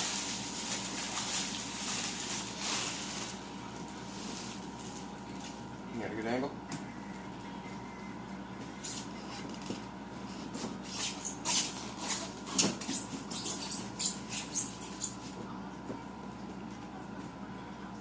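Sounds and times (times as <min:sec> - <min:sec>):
packaging crinkling and tearing: 0:00.0 - 0:03.5.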